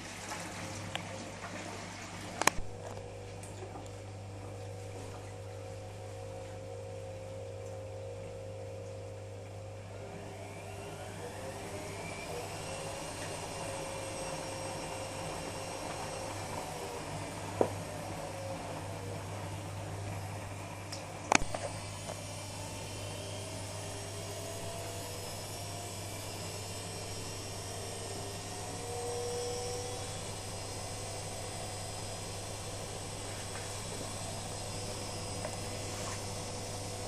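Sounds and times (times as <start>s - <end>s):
washing machine motor hum: 0.0s - 37.0s
drum whine rising in pitch: 5.0s - 37.0s
sharp click: 21.3s - 21.7s.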